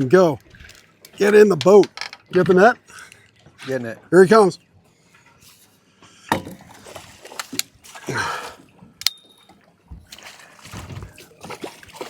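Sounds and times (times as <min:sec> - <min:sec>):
knocks against boat: 0:06.3 - 0:06.7
fish splashing at surface: 0:10.1 - 0:12.0.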